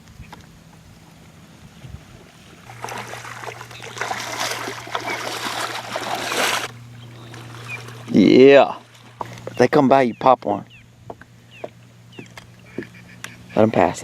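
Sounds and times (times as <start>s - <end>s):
water splashing and sloshing: 0.7s - 9.8s.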